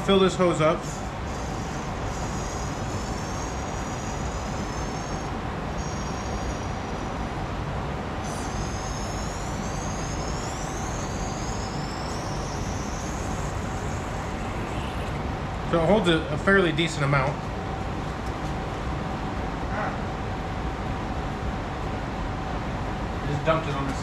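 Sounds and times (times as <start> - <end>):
high whistle: 0.8 - 7.2, 8.2 - 15.2.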